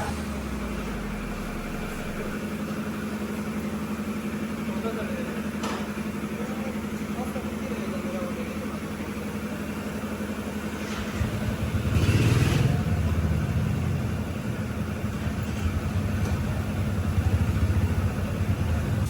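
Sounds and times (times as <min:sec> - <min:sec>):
motorcycle engine thumping: 0:05.0 - 0:08.3, 0:08.9 - 0:19.0.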